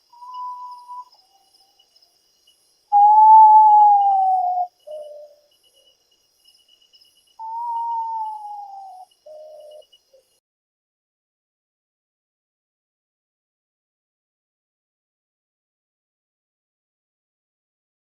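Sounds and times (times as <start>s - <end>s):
faint insect trill: 0.0s - 10.4s
bird whistling notes: 0.1s - 1.5s, 2.9s - 5.3s, 7.4s - 9.8s.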